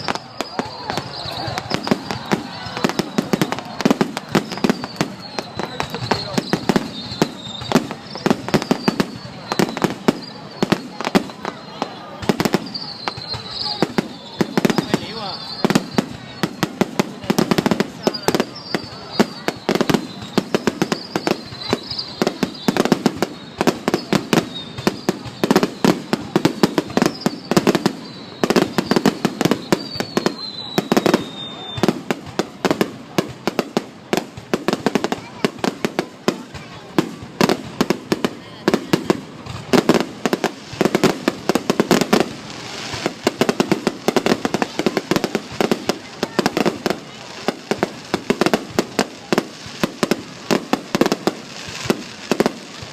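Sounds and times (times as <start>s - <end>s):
faint high whistle: 0.0s - 32.0s
fireworks bangs and pops: 0.0s - 52.9s.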